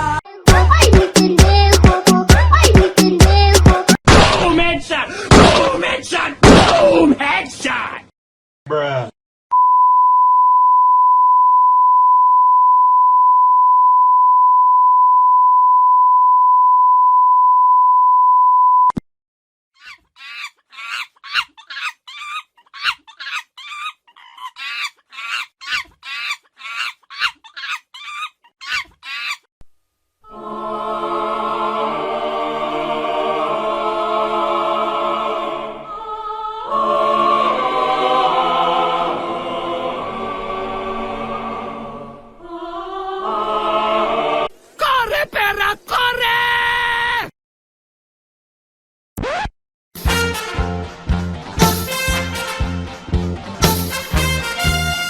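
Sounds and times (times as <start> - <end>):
choral music: 0.0 - 4.0, 30.2 - 44.7, 50.0 - 55.0
steady censor beep: 9.5 - 19.0.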